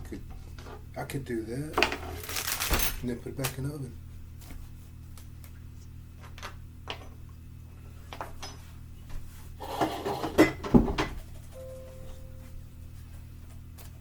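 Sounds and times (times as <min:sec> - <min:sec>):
dishes and utensils clattering: 0:09.6 - 0:11.4.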